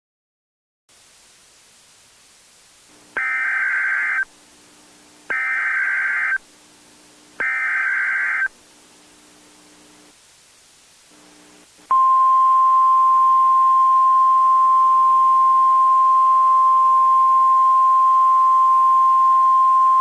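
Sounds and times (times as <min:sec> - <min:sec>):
low hiss: 0:00.9 - 0:18.2
digital data warble bursts: 0:03.2 - 0:04.3, 0:05.3 - 0:06.4, 0:07.4 - 0:08.5.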